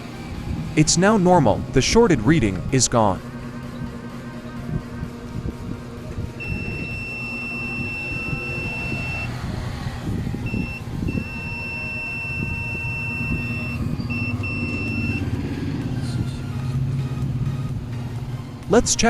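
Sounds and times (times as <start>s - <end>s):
low rumble: 0.0s - 19.0s
multimeter continuity beeping: 3.6s - 9.3s, 10.4s - 15.3s.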